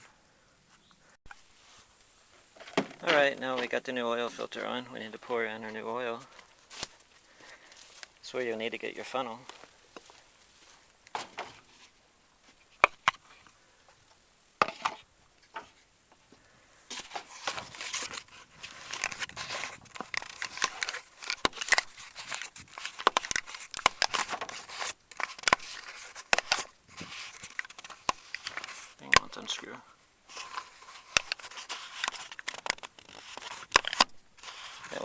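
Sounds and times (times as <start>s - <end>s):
plastic clicks and knocks: 12.8s - 13.2s, 18.9s - 29.4s, 31.0s - 34.2s
plastic crinkling and crackling: 16.9s - 29.6s, 30.3s - 35.0s.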